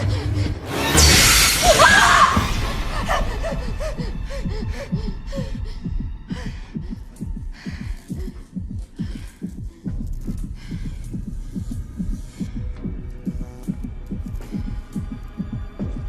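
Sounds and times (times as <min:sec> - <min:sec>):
shrill gliding cry: 0:01.5 - 0:03.5.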